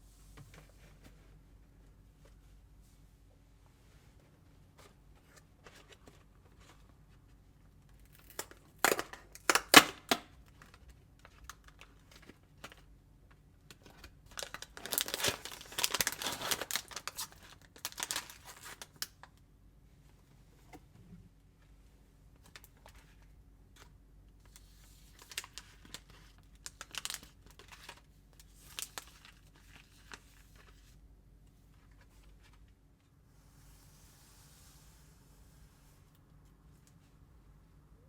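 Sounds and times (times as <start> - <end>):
packaging crinkling and rustling: 4.8 - 19.3, 22.4 - 31.0
packaging ripping: 14.3 - 19.1, 25.1 - 28.0.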